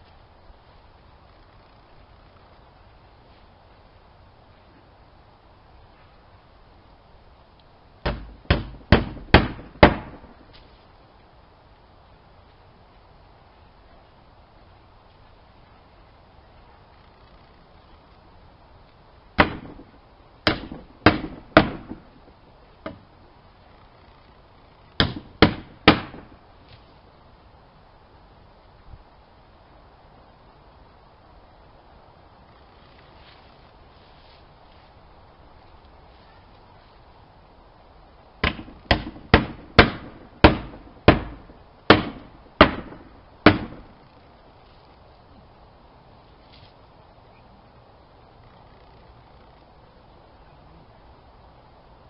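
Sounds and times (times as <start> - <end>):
sharp knocks: 8.0 - 10.3, 19.4 - 22.1, 25.0 - 26.4, 38.4 - 43.9
hammer striking wood: 8.1 - 10.3, 19.4 - 19.9, 20.5 - 22.0, 25.0 - 26.3, 38.4 - 43.9.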